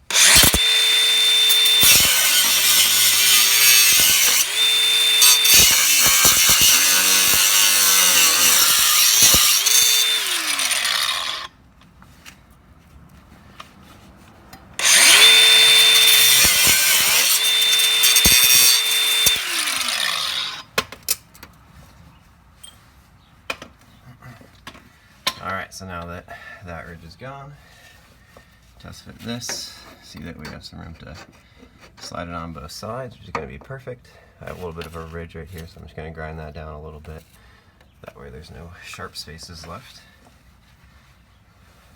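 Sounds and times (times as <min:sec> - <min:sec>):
power tool cutting metal: 0:00.0 - 0:11.5, 0:14.8 - 0:20.6.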